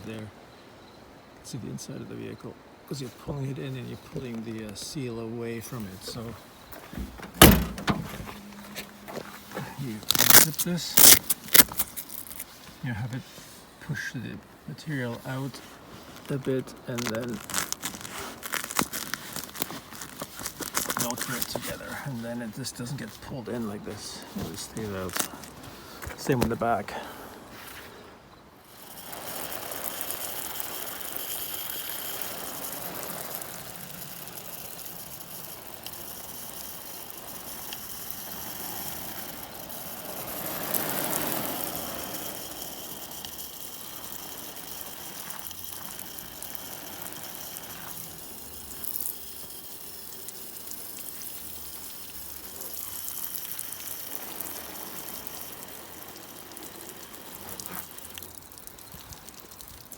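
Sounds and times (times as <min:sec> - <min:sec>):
water spraying on fabric: 0:17.0 - 0:25.6, 0:28.6 - 0:59.9.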